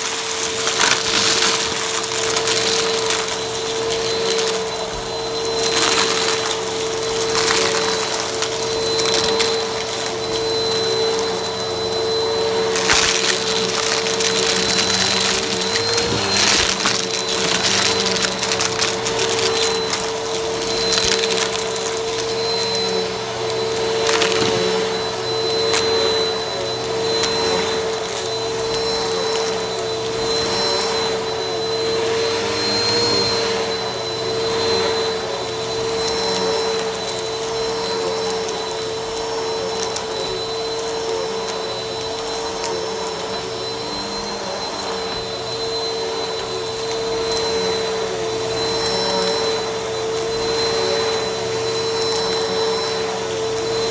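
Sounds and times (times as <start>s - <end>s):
vacuum cleaner running: 0.0s - 53.9s.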